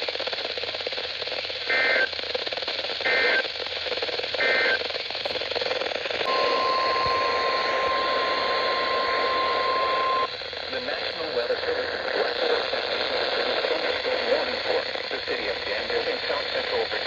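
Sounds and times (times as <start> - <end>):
radio static hiss: 0.0 - 17.0
digital data tone bursts: 6.3 - 10.3
steady warning alarm tone: 6.3 - 10.4.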